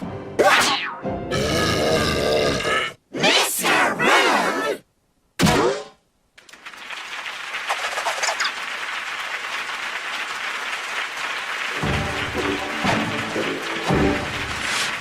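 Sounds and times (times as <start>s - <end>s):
music: 0.0s - 1.6s, 11.7s - 15.0s
audience clapping: 6.4s - 15.0s.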